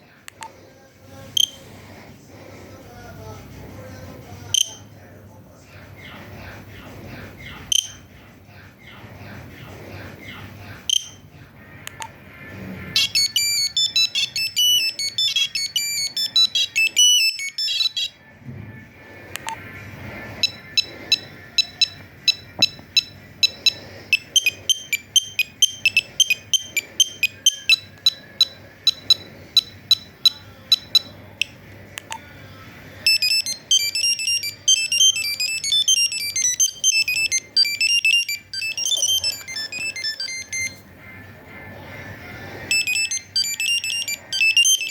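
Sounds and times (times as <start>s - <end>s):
monophonic ringtone beeping: 7.7s - 8.0s, 10.9s - 11.3s, 12.9s - 18.2s, 19.4s - 31.6s, 33.0s - 41.2s, 42.5s - 44.9s.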